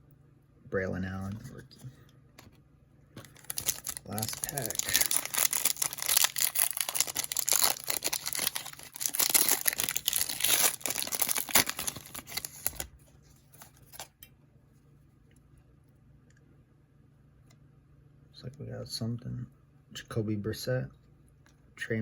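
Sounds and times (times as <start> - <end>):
wrapper tearing and crinkling: 3.2 - 12.9.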